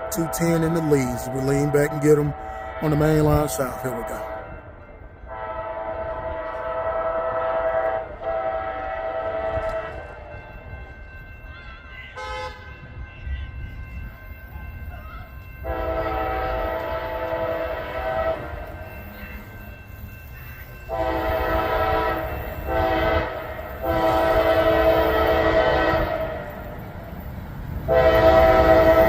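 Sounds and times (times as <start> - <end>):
locomotive air horn: 0.0 - 1.6, 2.3 - 4.6, 5.3 - 10.2, 12.2 - 12.8, 15.6 - 18.8, 20.9 - 26.7, 27.9 - 29.0
low rumble of train: 0.0 - 29.0.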